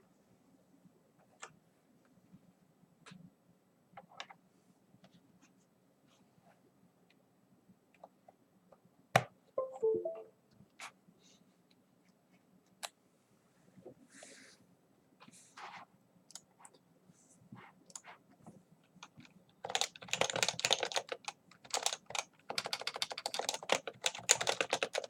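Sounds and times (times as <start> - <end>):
short pitched tone: 9.6 - 10.3
keyboard keys clicking: 19.0 - 25.0.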